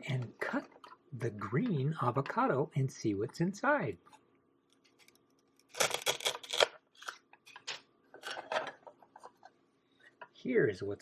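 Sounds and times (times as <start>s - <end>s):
velcro tearing: 5.7s - 7.1s.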